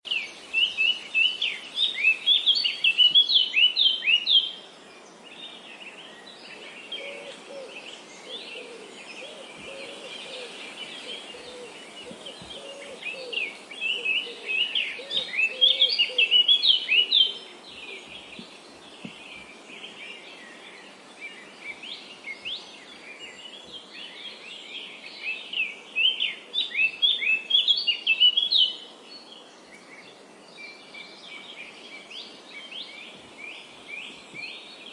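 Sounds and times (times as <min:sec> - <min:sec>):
background hiss: 0:00.1 - 0:34.9
birds chirping: 0:00.1 - 0:34.9
lower-pitched bird calls: 0:06.6 - 0:19.5.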